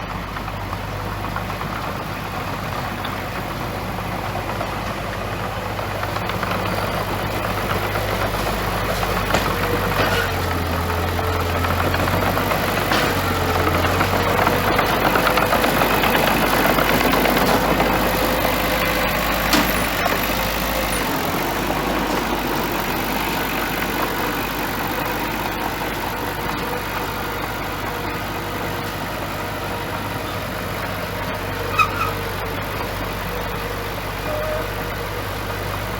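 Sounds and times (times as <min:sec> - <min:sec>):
bulldozer diesel engine running: 0:00.0 - 0:35.9
short metallic clanks: 0:19.4 - 0:20.2.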